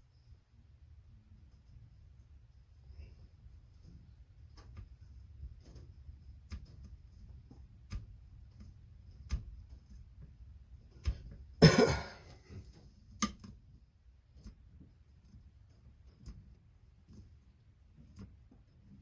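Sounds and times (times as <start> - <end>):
light clicks and taps: 1.4 - 11.6, 12.3 - 19.0
man coughing: 11.6 - 12.3.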